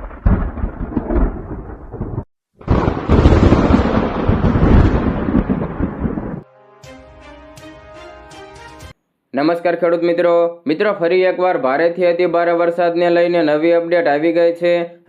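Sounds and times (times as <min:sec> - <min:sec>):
thunder rumbling: 0:00.0 - 0:06.4
music with sustained tones: 0:06.4 - 0:09.0.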